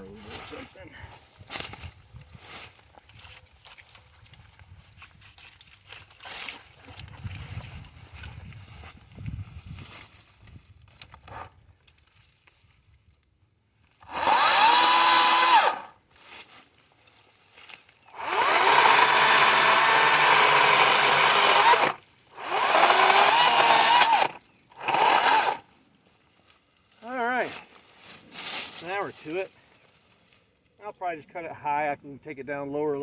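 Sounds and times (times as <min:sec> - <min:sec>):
electric chainsaw whine: 0:14.0 - 0:16.0, 0:18.1 - 0:25.7.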